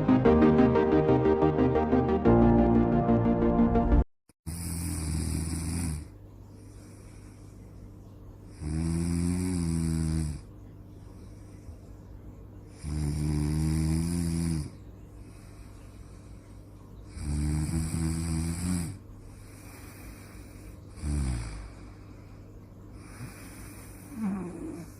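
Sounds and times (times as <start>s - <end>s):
person snoring: 4.5s - 6.1s, 8.5s - 10.4s, 12.8s - 14.7s, 17.1s - 21.9s, 23.0s - 24.9s
steady low hum: 4.6s - 24.9s.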